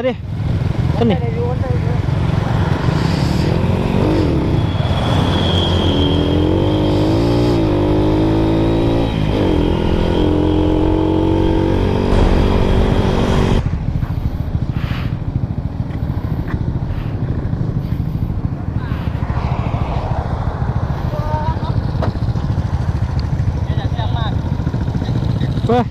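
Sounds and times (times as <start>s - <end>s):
motorcycle engine running: 7.9s - 19.3s, 20.4s - 25.9s
dull steady rumble: 9.8s - 24.7s.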